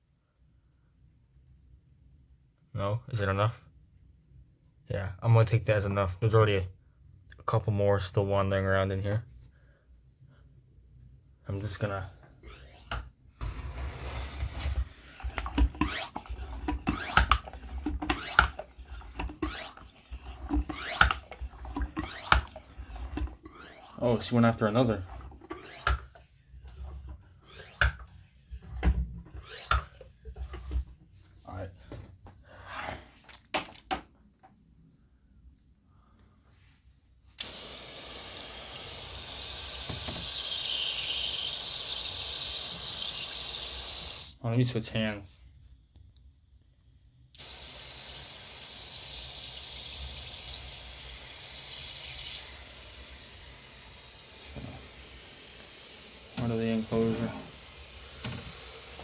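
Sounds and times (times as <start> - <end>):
running water hiss: 37.4 - 44.4, 47.4 - 59.0.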